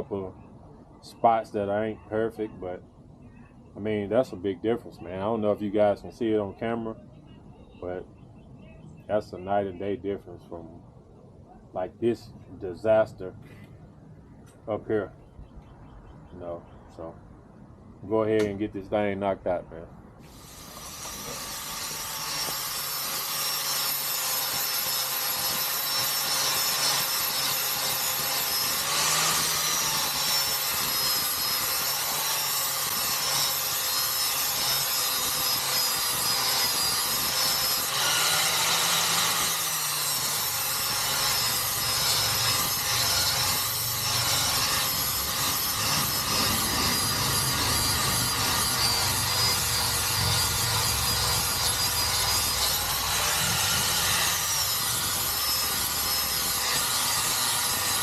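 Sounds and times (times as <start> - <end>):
angle grinder grinding metal: 20.3 - 58.0.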